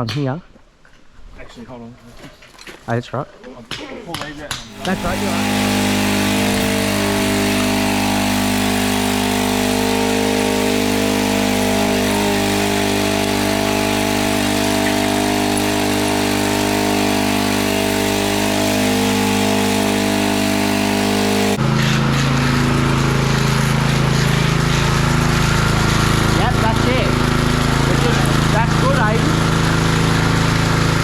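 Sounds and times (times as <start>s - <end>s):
engine droning steadily: 4.8s - 21.6s.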